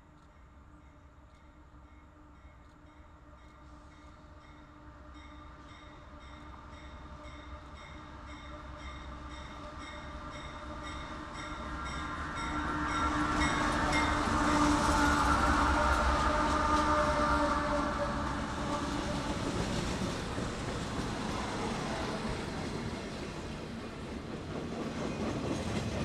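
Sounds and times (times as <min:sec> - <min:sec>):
train passing: 0:00.0 - 0:26.0
steady engine or horn tones: 0:14.3 - 0:18.4.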